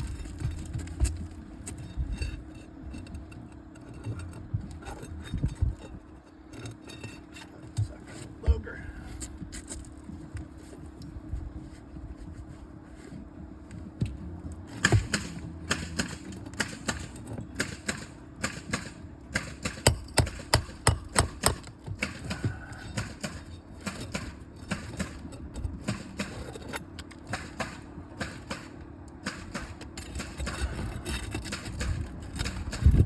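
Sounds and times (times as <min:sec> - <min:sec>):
shingle being pried loose: 0:14.7 - 0:33.0.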